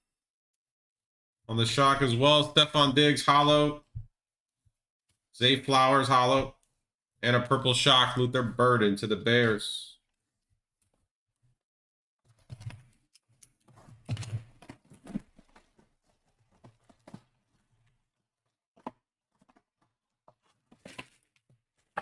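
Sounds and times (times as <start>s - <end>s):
cards and packaging rustling: 19.3s - 22.0s.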